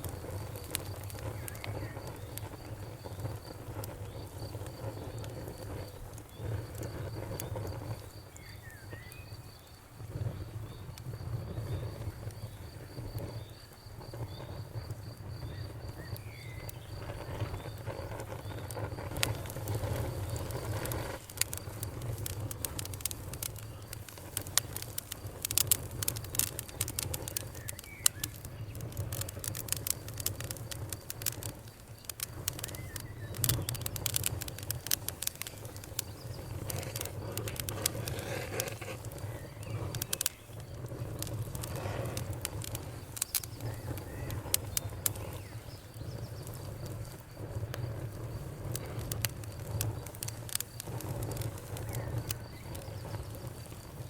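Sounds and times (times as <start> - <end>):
campfire crackling and popping: 0.0 - 54.0
insect trill: 0.0 - 54.0.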